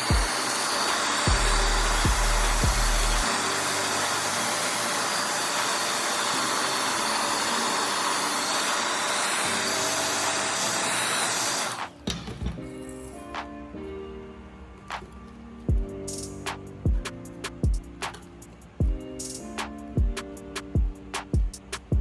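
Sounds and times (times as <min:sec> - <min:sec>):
air blower hissing: 0:00.0 - 0:11.9
background music: 0:00.0 - 0:22.0.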